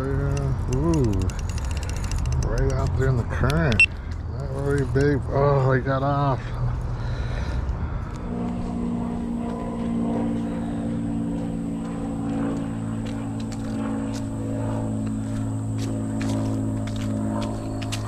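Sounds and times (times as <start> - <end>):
light clicks and rattles: 0.0 - 5.2
car engine and road drone: 0.0 - 18.0.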